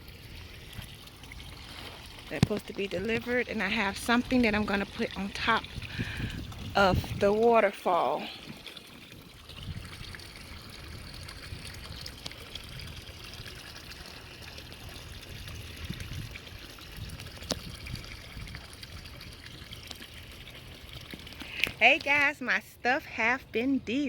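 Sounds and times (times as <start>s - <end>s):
water trickling and splashing: 0.0s - 24.0s.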